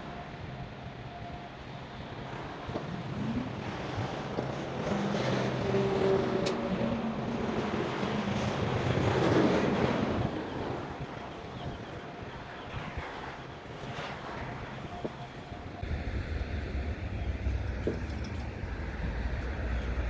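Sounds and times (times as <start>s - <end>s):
wind on microphone: 2.6s - 20.0s
vehicle passing: 15.8s - 20.0s.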